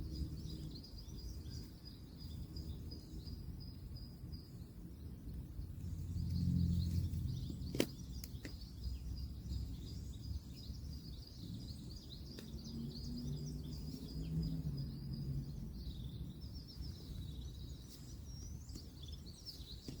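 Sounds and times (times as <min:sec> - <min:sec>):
distant road traffic: 0:00.0 - 0:20.0
small birds chirping: 0:00.0 - 0:20.0
low engine hum: 0:04.8 - 0:20.0.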